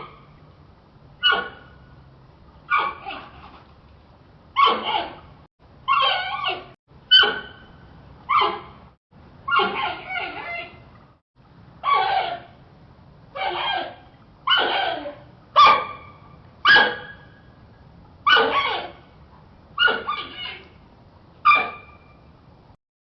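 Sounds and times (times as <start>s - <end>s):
faint low hum: 0.0s - 22.8s
panda yelping calls: 5.9s - 7.7s, 9.5s - 10.8s, 11.8s - 12.5s, 13.4s - 15.2s, 18.3s - 19.0s, 19.8s - 20.7s.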